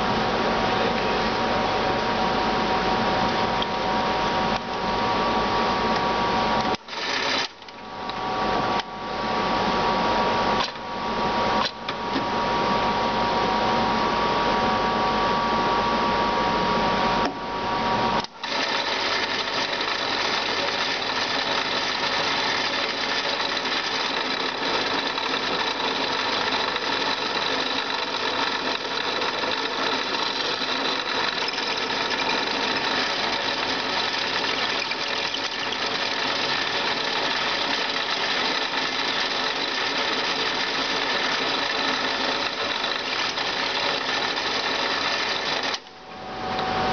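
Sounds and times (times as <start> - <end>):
drill boring into metal: 6.8 - 7.6, 18.4 - 45.8.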